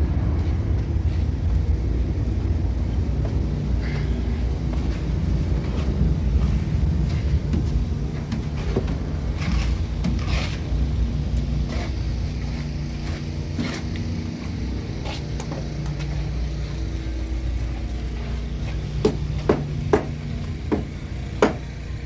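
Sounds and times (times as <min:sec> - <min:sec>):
engine running steadily: 0:00.0 - 0:22.0
sharp knocks: 0:19.0 - 0:21.7.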